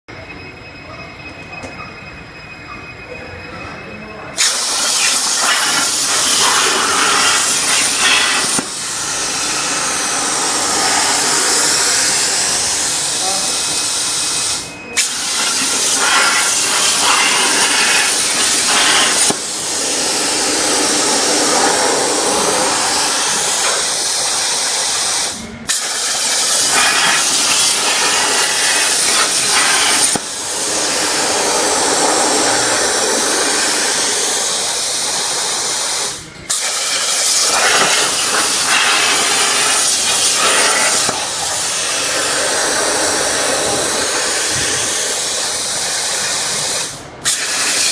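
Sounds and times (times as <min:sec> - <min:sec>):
plasma torch cutting steel hiss: 0:04.4 - 0:47.9.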